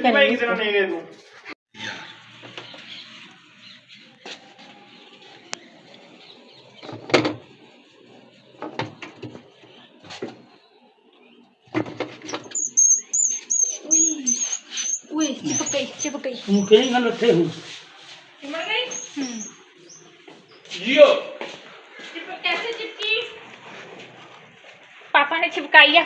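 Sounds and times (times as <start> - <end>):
mouse squeaking: 12.2 - 17.0.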